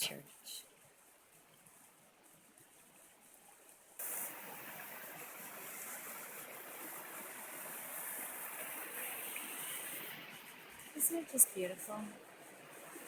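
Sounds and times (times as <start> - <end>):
stream water rushing: 4.0 - 13.0.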